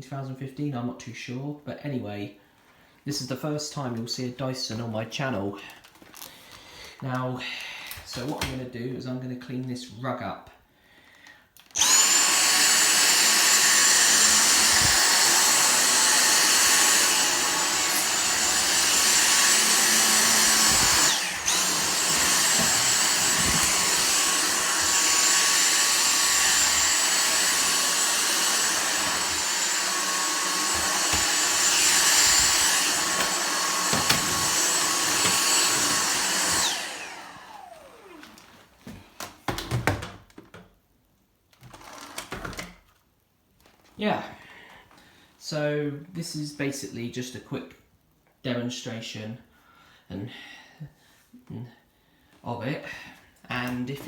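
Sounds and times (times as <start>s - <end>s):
vacuum cleaner motor whine: 11.8s - 38.6s.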